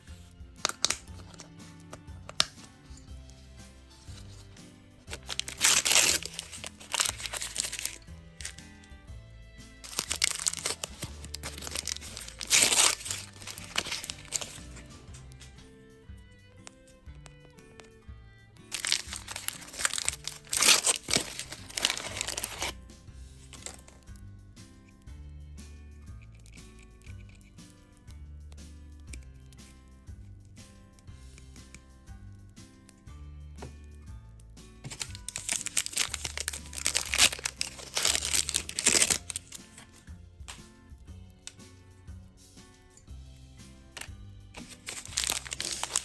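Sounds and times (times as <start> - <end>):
light background music: 0.0 - 46.0
packaging crinkling and tearing: 0.6 - 1.6, 5.1 - 8.6, 9.8 - 15.5, 18.7 - 22.8, 23.5 - 24.0, 34.8 - 40.0, 44.6 - 46.0.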